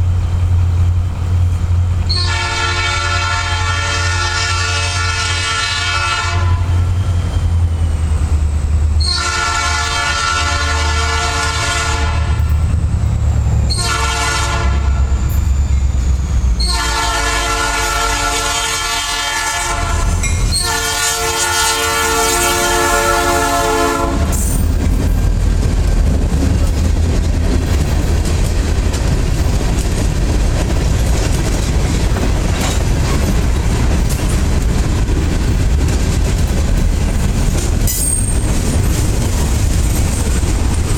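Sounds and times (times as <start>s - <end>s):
locomotive engine rumble: 0.0s - 40.9s
locomotive air horn blasts: 2.1s - 6.8s, 9.0s - 12.5s, 13.7s - 15.3s, 16.6s - 24.6s
train wheels clacking on rails: 18.7s - 40.9s.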